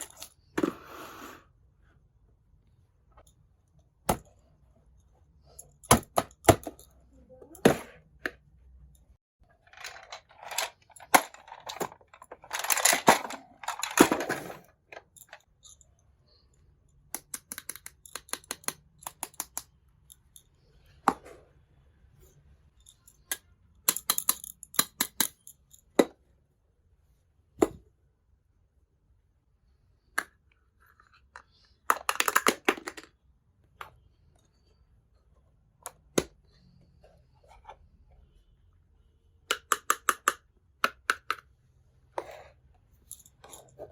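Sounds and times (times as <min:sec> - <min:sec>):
toy pieces clicking and clacking: 0:09.6 - 0:15.8, 0:17.2 - 0:20.4, 0:22.8 - 0:25.8, 0:30.3 - 0:33.1.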